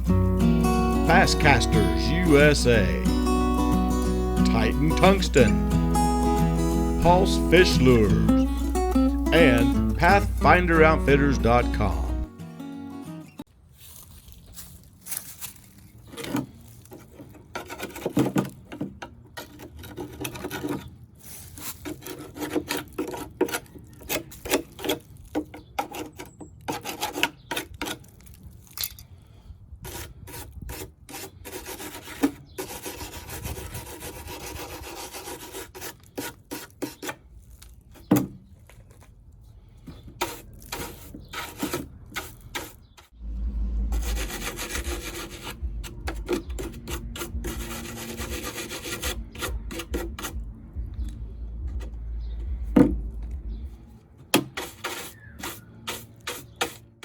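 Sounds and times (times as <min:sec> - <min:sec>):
hand filing plastic: 0:21.5 - 0:28.0, 0:29.9 - 0:37.2, 0:39.9 - 0:43.0, 0:43.9 - 0:50.4
steady low hum: 0:43.2 - 0:46.3.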